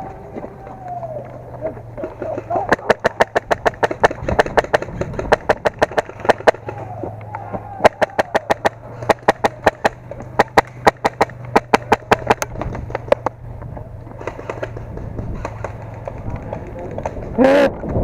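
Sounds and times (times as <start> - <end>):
airsoft guns firing: 2.1 - 13.3, 14.2 - 17.3.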